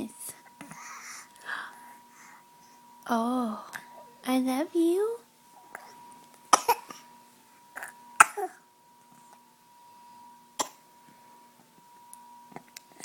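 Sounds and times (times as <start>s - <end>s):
faint steady hum: 0.0s - 13.0s
baby coughing: 6.5s - 7.0s, 7.8s - 8.6s, 10.6s - 10.8s.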